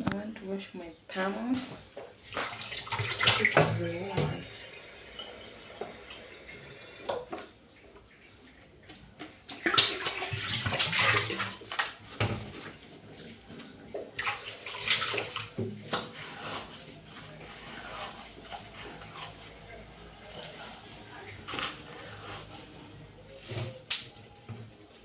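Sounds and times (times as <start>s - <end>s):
water splashing and running: 2.3s - 4.4s, 14.2s - 16.7s.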